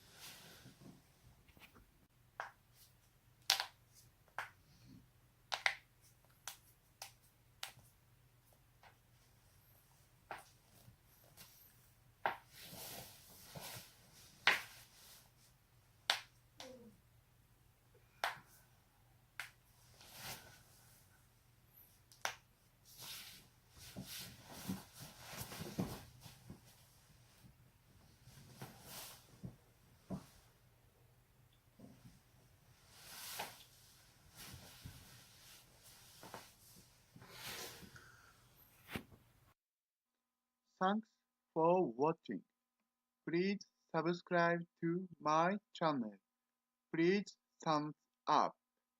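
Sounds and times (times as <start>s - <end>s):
soft rustle of movement: 0.0s - 2.0s, 6.0s - 15.6s, 19.7s - 22.1s, 22.8s - 30.6s, 31.7s - 39.3s
soft hiss: 31.4s - 39.6s.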